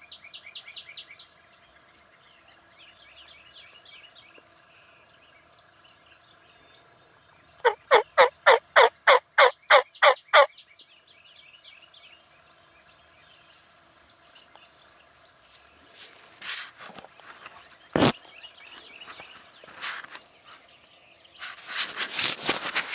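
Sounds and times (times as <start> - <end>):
small birds chirping: 0.0 - 22.9
turkey yelps: 7.6 - 10.5.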